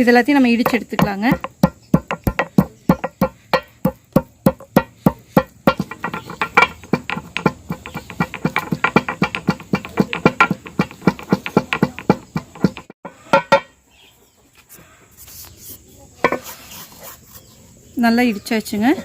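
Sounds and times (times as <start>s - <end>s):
pestle pounding in mortar: 0.4s - 13.7s.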